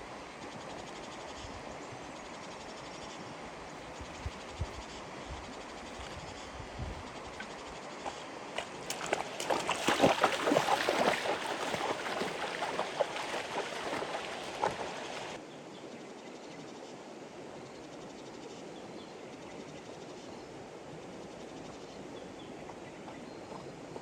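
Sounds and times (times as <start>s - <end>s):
water splashing and sloshing: 5.8s - 15.4s.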